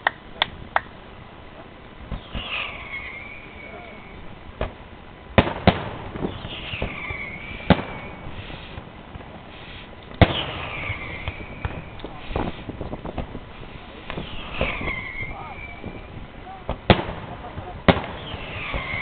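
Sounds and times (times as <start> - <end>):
fireworks bangs: 1.9 - 19.0
small firework pops: 2.1 - 4.0, 4.6 - 4.8, 5.4 - 13.4, 14.0 - 16.0, 16.6 - 19.0
high falling whistle tone: 2.2 - 4.3, 6.2 - 8.3, 14.2 - 16.1.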